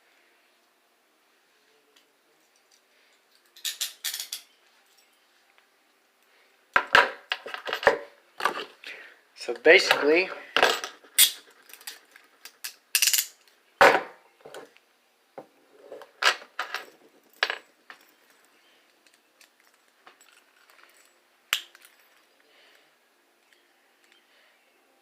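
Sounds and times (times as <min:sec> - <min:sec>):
handcuffs clicking and clinking: 0:02.0 - 0:05.1, 0:09.5 - 0:13.6, 0:16.0 - 0:22.8, 0:23.4 - 0:24.3.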